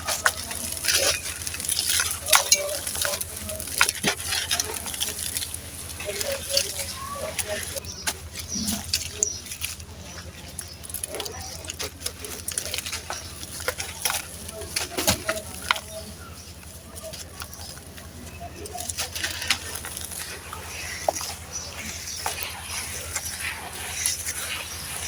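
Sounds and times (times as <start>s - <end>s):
sand-cement chunks crumbling: 0.0s - 25.0s.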